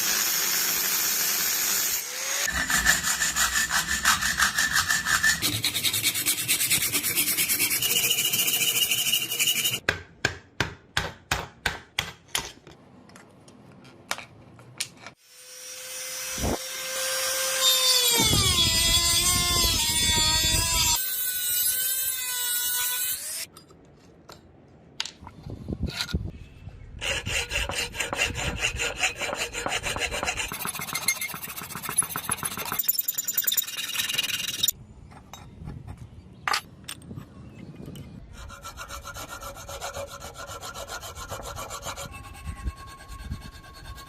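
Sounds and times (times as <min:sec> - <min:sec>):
hand tool rasping on steel: 0:02.4 - 0:09.8, 0:27.0 - 0:34.7, 0:38.4 - 0:44.0.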